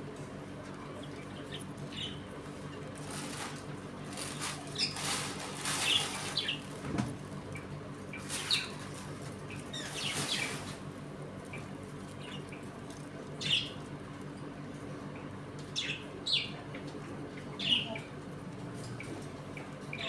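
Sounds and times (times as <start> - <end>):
wings flapping: 2.9 - 7.2, 8.2 - 11.0
budgerigars chirping: 9.5 - 10.6, 13.4 - 13.8.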